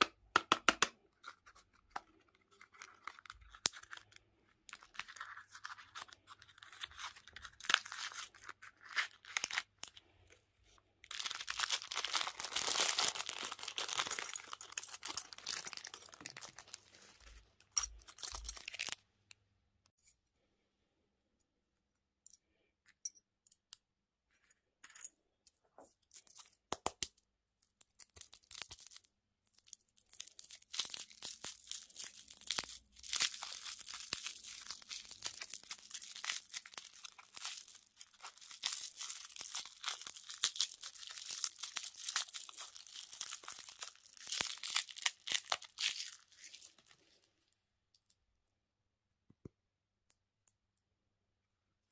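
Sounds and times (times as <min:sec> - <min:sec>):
candy wrapper crinkling and tearing: 0:01.0 - 0:10.3, 0:11.0 - 0:19.0, 0:26.0 - 0:47.3.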